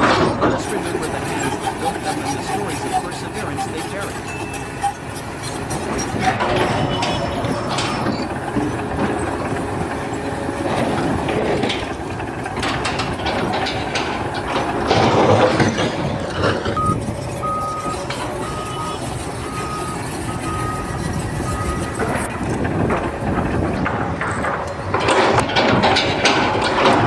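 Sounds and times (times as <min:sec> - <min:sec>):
construction machinery: 0:00.0 - 0:27.0
reversing alarm beeps: 0:04.1 - 0:08.4, 0:15.4 - 0:22.5.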